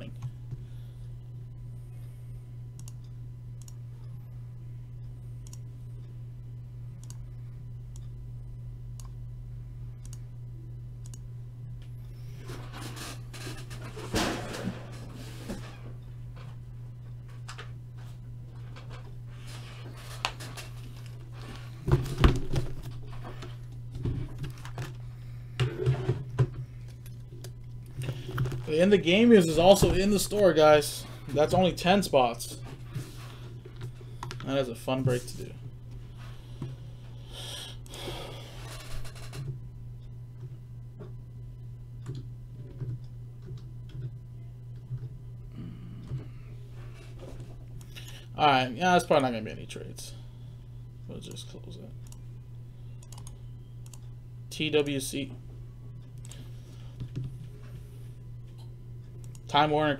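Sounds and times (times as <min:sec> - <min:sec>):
low electrical hum: 0:00.0 - 0:59.9
keyboard and mouse clicks: 0:53.0 - 0:54.0.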